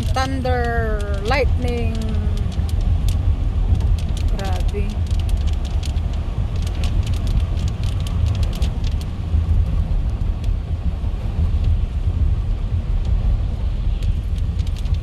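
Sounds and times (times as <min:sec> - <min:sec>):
drops ticking on car: 0:00.0 - 0:11.8
car cabin rumble: 0:00.0 - 0:15.0.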